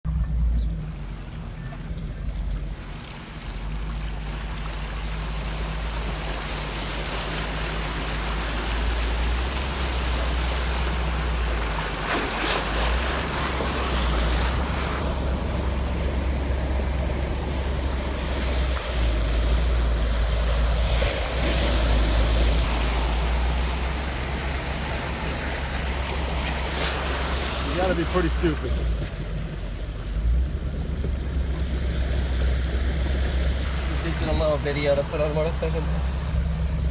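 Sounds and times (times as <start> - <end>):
vehicle churning through floodwater: 0.1 - 36.9
low rumble: 12.7 - 36.9.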